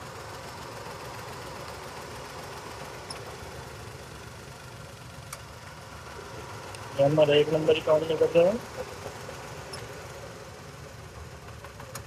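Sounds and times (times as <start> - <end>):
misfiring car engine idling: 0.0 - 12.0.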